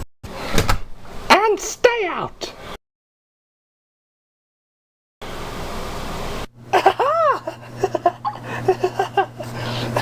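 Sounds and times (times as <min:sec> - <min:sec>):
cartoon voices laughing: 0:06.7 - 0:10.0.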